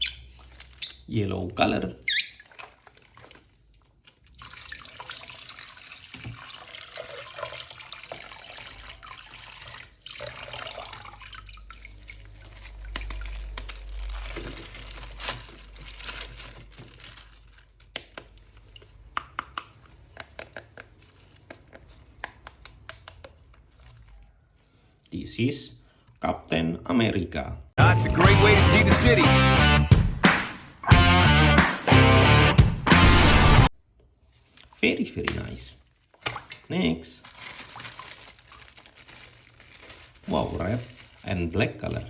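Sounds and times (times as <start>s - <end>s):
water running from tap: 4.4s - 12.4s
small clicks and taps: 19.2s - 23.6s.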